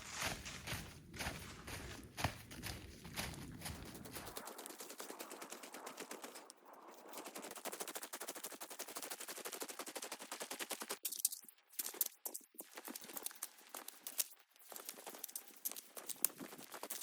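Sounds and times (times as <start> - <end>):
snow pattering on fabric: 0.0 - 6.1.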